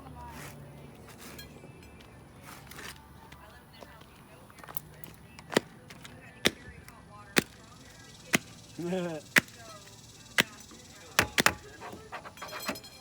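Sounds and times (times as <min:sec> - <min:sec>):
small fireworks popping: 0:02.6 - 0:12.2.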